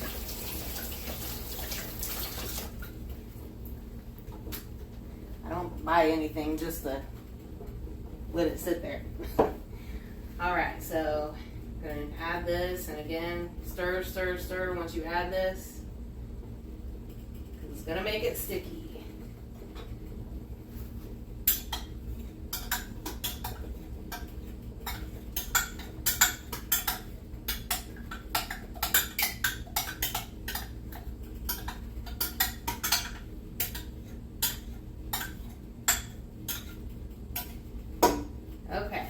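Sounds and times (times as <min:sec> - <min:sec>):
utensil scraping and clinking on pot: 0:21.5 - 0:37.6.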